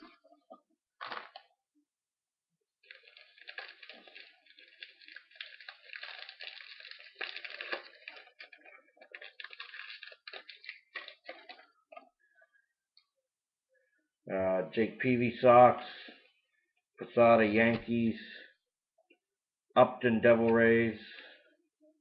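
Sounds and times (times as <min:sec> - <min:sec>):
wrapper tearing and crinkling: 0:01.0 - 0:01.5, 0:02.8 - 0:11.8.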